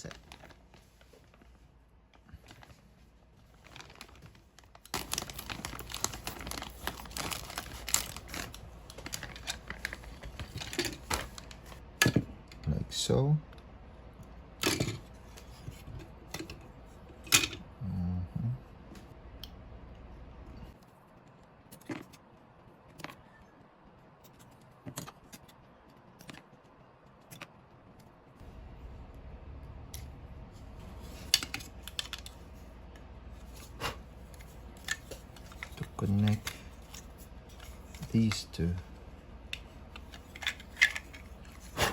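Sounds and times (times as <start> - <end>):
faint low hum: 0.0 - 41.9
plastic parts clicking: 24.2 - 28.1, 39.5 - 41.7.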